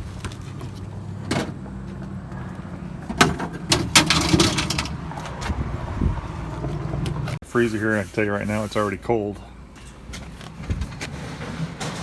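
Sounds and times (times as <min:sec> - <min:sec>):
metal appliance knocking and rattling: 0:03.1 - 0:05.0.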